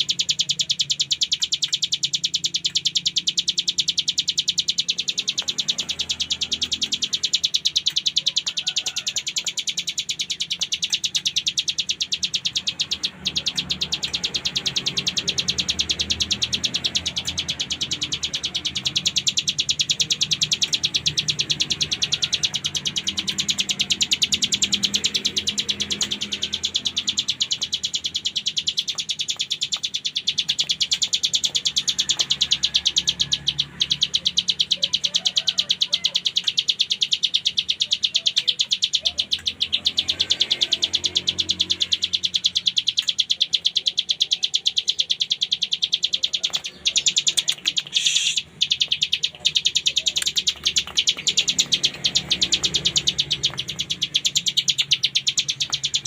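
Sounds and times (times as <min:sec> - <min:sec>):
bird singing rattling trill: 0:00.0 - 0:56.0.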